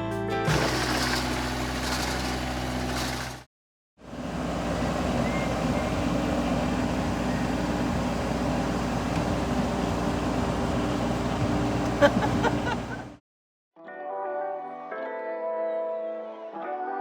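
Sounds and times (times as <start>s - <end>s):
heavy machinery engine running: 0.5s - 3.5s, 4.1s - 13.2s.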